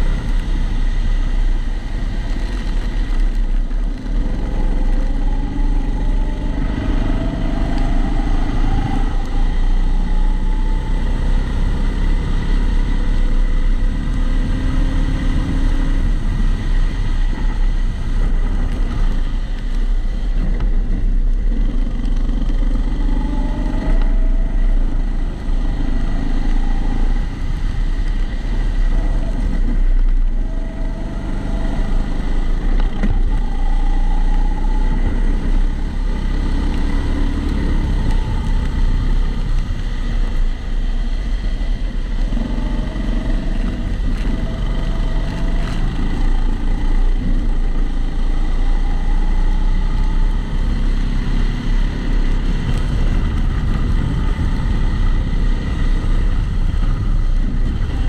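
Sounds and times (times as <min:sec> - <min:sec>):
kart engine running: 0:41.6 - 0:58.0.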